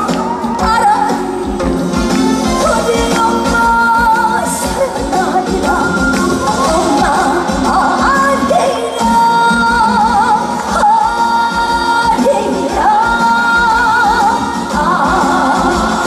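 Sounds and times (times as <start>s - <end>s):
backing band playing: 0.0s - 16.0s
woman singing: 0.0s - 16.0s.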